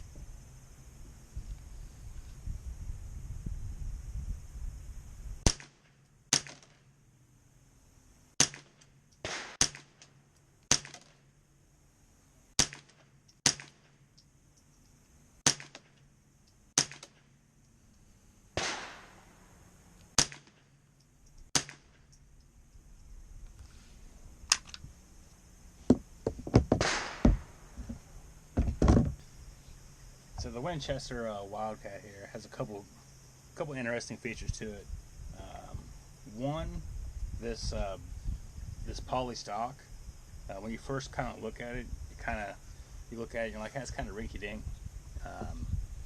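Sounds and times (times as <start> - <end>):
rifle shots cracking: 8.4 - 10.0, 18.6 - 19.3, 26.8 - 27.6.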